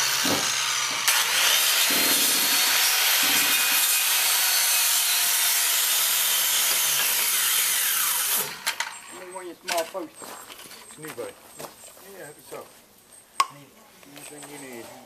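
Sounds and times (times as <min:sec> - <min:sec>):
power saw cutting wood: 0:00.0 - 0:09.2.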